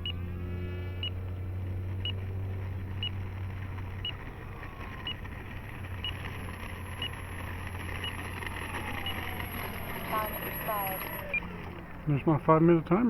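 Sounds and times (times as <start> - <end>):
low hum: 0.0 - 13.0
steady noisy background: 0.0 - 13.0
rc transmitter beeping: 2.8 - 11.5.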